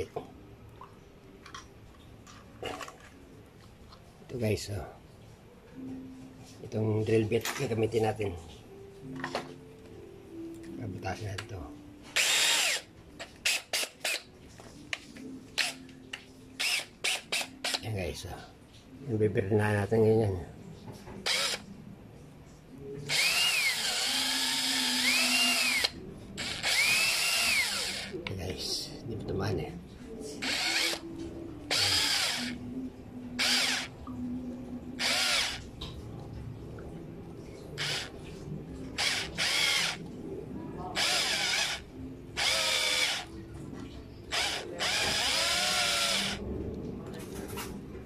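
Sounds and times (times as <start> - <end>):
electric drill whining: 12.2 - 14.2, 16.6 - 17.8, 21.2 - 21.6, 23.1 - 28.2, 30.4 - 31.0, 31.7 - 32.6, 33.4 - 33.9, 35.0 - 35.6, 37.8 - 38.1, 39.0 - 40.0, 41.0 - 41.8, 42.4 - 43.3, 44.3 - 46.4.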